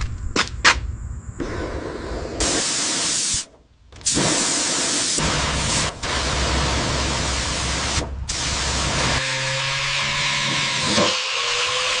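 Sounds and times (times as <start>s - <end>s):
loud spraying hiss: 1.4s - 9.2s.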